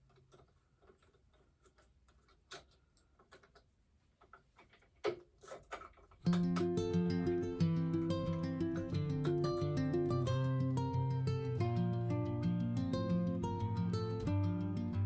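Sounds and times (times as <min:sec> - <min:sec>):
tools and metal parts clicking: 0:00.0 - 0:06.8.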